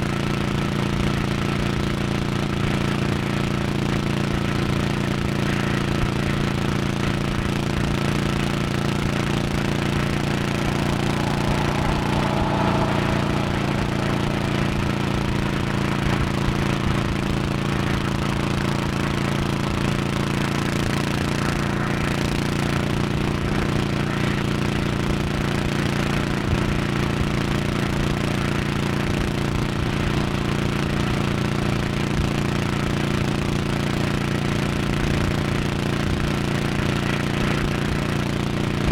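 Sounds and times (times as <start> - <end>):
motorcycle engine cruising: 9.3 - 17.1.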